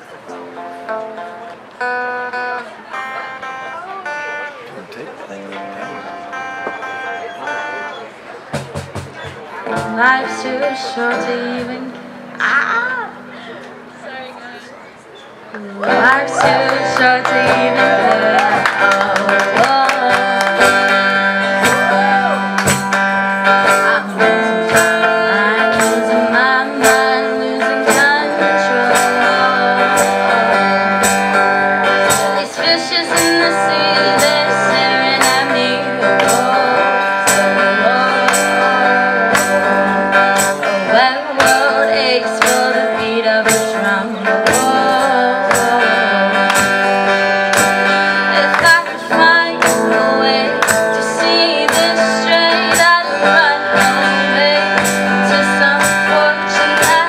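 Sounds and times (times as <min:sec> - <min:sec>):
guitar: 0:00.0 - 0:57.0
person singing: 0:09.7 - 0:13.7, 0:15.6 - 0:57.0.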